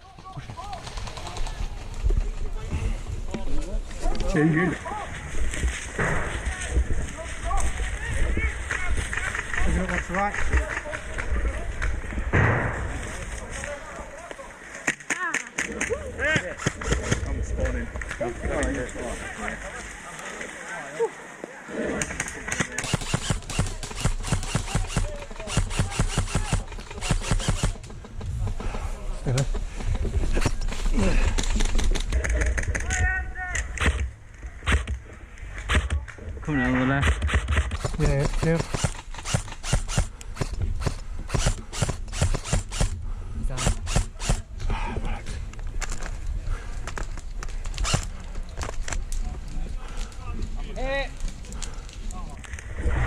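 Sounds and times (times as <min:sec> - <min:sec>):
fast thuds and clicks: 0:37.0 - 0:43.0.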